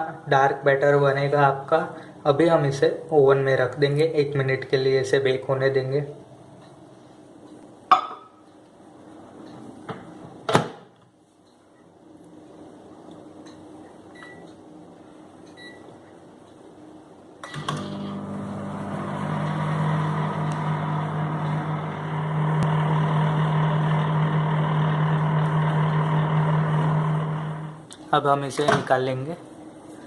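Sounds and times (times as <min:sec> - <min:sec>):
microwave humming with fan noise: 0:11.6 - 0:29.1
microwave click: 0:17.4 - 0:21.8.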